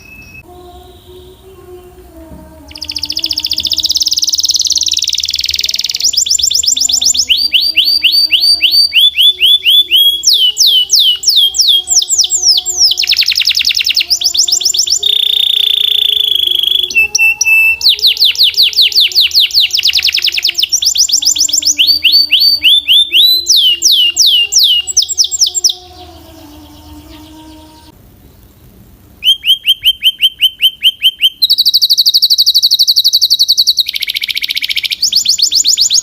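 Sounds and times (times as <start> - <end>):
canary singing trills: 0.0 - 36.0.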